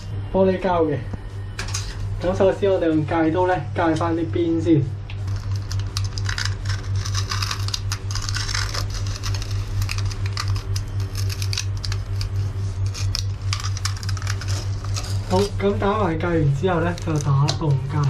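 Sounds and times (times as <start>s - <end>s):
low hum: 0.0s - 18.0s
knife blade scratching sealant: 5.4s - 15.5s.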